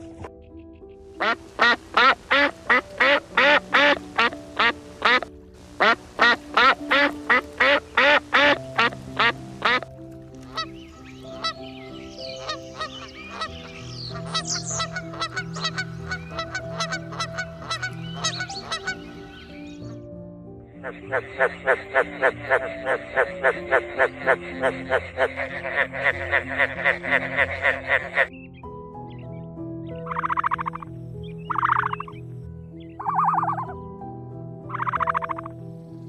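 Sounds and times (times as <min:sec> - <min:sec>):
background music: 0:00.0 - 0:36.0
mixed bird calls: 0:00.5 - 0:09.8, 0:10.4 - 0:20.0, 0:20.7 - 0:33.9, 0:34.7 - 0:35.5
duck quacking rapidly: 0:01.2 - 0:09.8, 0:20.8 - 0:28.3.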